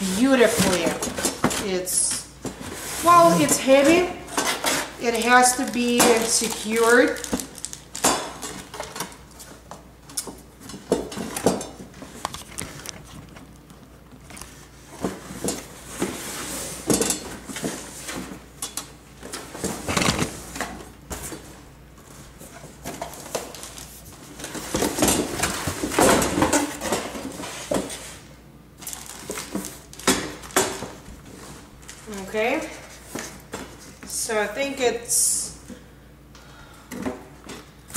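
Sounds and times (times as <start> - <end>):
packaging rustling: 3.0 - 9.6, 28.8 - 32.0.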